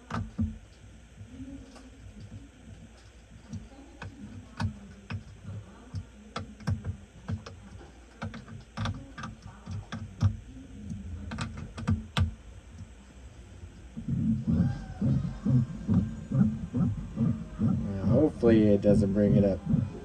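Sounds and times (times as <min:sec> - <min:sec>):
sharp clicks and light knocks: 0:01.7 - 0:12.9.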